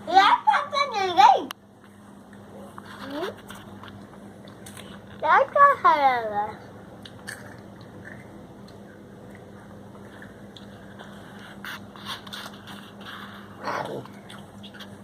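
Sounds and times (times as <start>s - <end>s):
steady low hum: 0.0s - 15.0s
soft eating clicks and scrapes: 1.8s - 5.6s, 7.0s - 15.0s.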